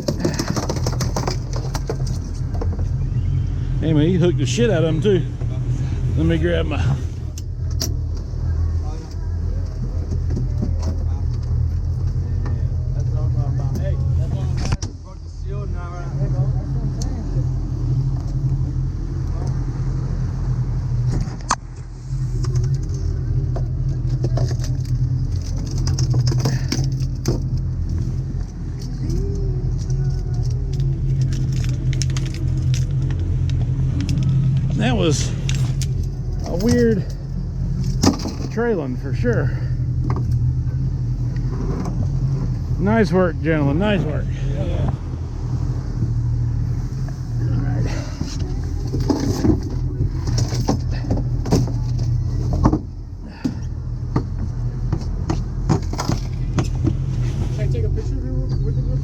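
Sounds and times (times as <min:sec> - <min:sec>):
knocks and clunks on deck: 0:00.0 - 0:03.0
light clicks and rattles: 0:00.0 - 0:03.0, 0:22.4 - 0:38.7
boat engine humming: 0:00.0 - 0:59.0.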